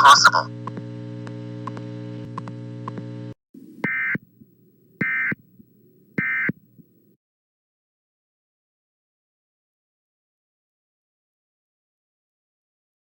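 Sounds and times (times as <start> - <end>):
electronic data bursts: 0.0 - 0.5
low static rumble: 0.0 - 7.1.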